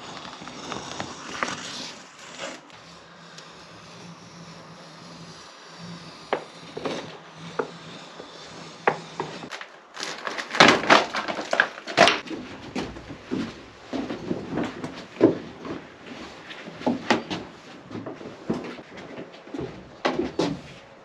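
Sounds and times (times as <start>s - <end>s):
wooden knocks and clatter: 10.5s - 20.7s.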